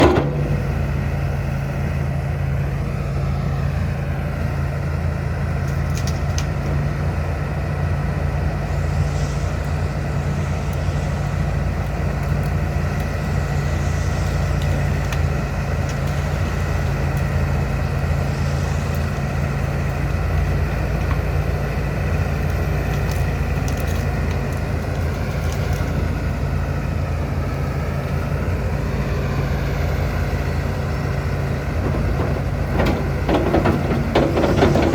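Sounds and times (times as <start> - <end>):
hydraulic whine: 0.0 - 4.4
excavator diesel engine: 0.0 - 34.9.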